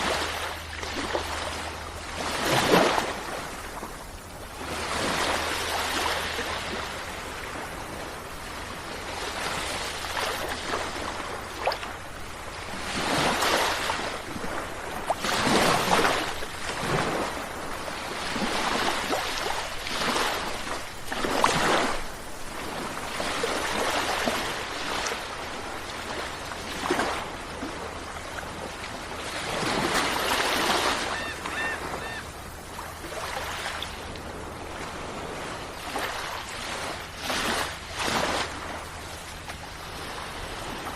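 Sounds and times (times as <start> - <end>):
sea waves breaking: 0.0 - 40.9.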